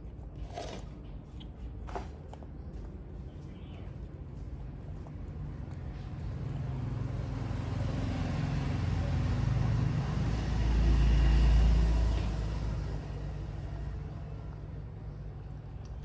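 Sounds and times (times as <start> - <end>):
vehicle engine rumble passing: 5.4 - 16.0.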